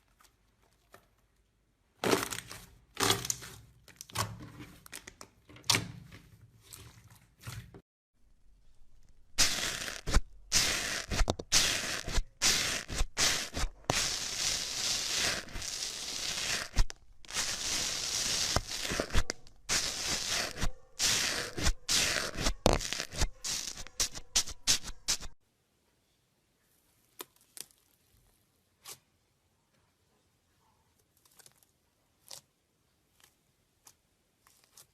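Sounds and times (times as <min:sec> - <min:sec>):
slime squishing and crackling: 0:09.4 - 0:25.4.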